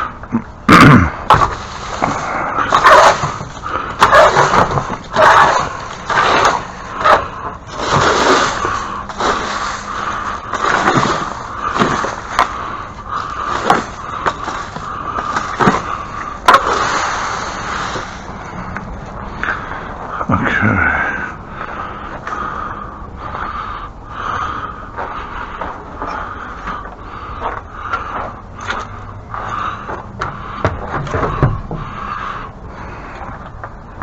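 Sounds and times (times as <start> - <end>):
rough scraping: 0.7 - 24.3
sharp knocks and clatter: 29.5 - 32.0.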